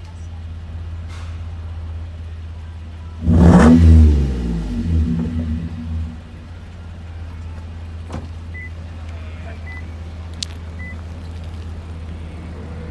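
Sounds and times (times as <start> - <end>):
car engine idling: 0.0 - 12.9.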